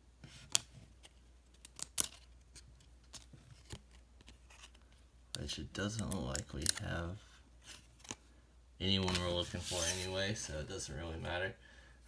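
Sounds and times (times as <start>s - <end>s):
cards clicking and sliding: 0.2s - 4.9s, 5.9s - 7.0s, 9.0s - 10.2s.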